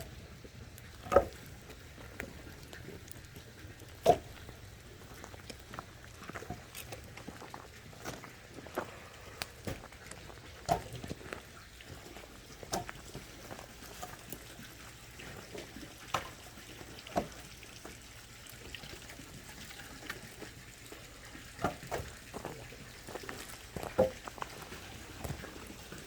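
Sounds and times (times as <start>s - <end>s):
water trickling: 0.0s - 26.0s.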